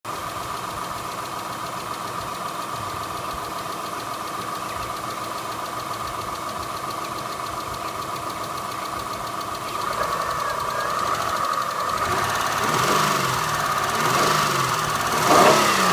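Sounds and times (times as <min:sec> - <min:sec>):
car engine idling: 0:00.1 - 0:15.9
rhythmic lifter ticking: 0:02.3 - 0:15.9.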